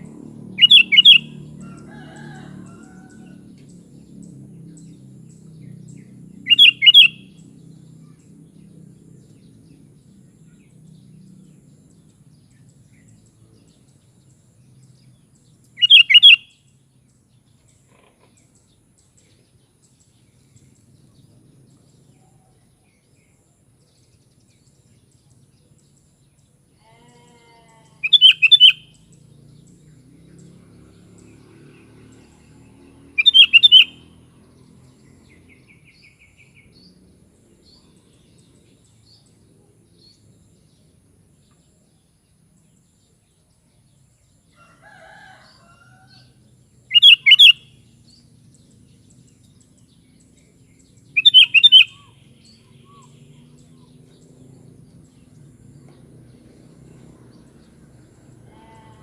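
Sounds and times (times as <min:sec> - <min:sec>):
bulbul song phrases: 0:58.3 - 0:59.0.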